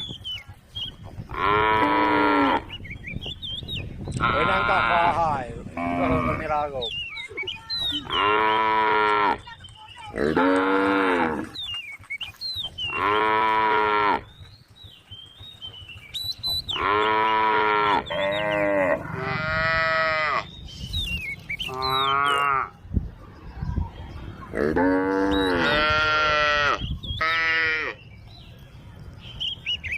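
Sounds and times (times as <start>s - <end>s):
cows mooing: 1.3s - 2.7s, 4.2s - 6.6s, 8.0s - 9.4s, 10.2s - 11.6s, 12.9s - 14.3s, 16.7s - 20.5s, 21.7s - 22.7s, 24.5s - 28.0s.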